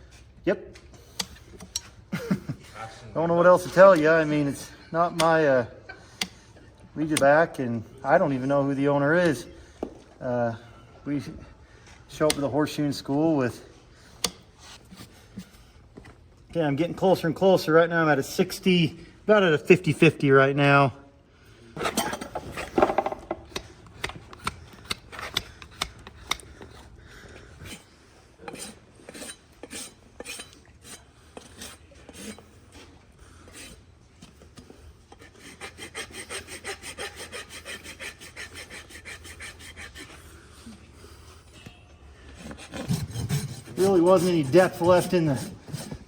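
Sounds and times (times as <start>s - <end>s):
hoof rasp scraping: 21.8s - 40.4s, 42.2s - 46.0s.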